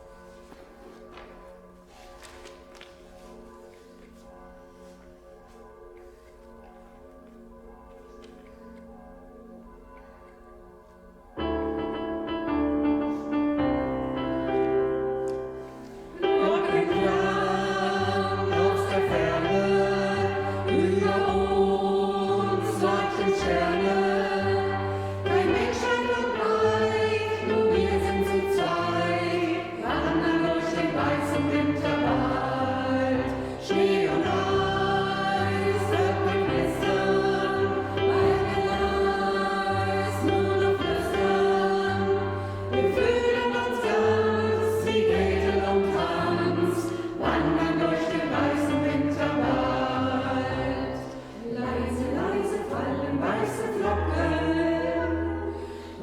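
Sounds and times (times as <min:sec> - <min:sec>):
choir singing: 0:11.6 - 0:56.0.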